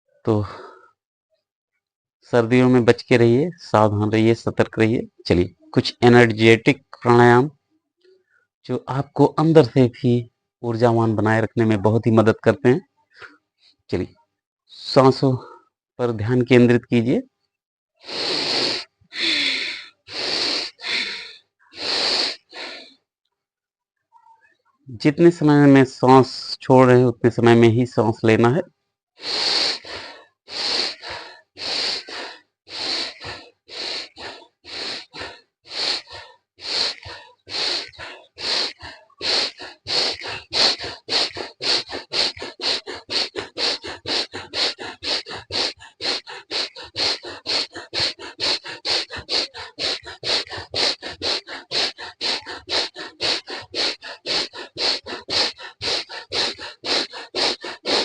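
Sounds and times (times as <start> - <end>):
forceful rhythmic breathing: 0.1 - 1.0, 18.0 - 23.1, 29.2 - 58.0.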